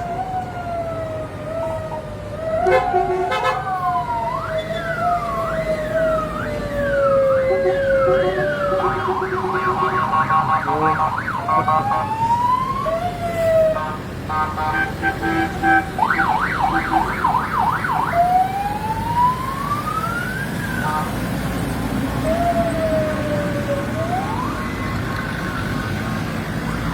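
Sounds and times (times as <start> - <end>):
sirens yelping and wailing: 0.0 - 26.9
multi-note horn blasts: 2.6 - 3.7, 7.5 - 12.1, 13.8 - 17.1.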